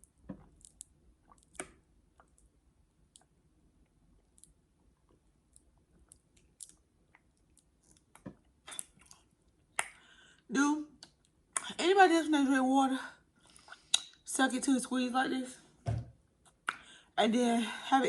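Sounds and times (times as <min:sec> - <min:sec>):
person chewing: 0:04.3 - 0:10.0.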